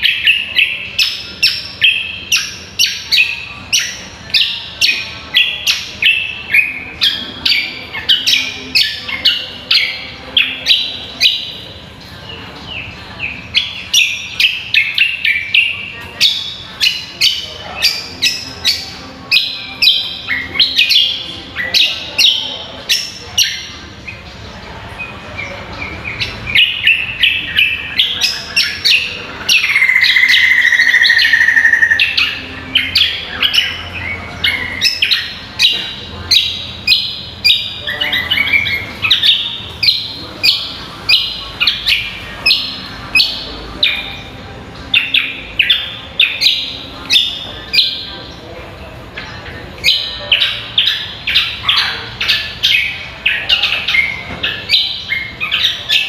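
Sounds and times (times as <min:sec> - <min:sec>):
high bird chirps: 0:25.1 - 0:48.4.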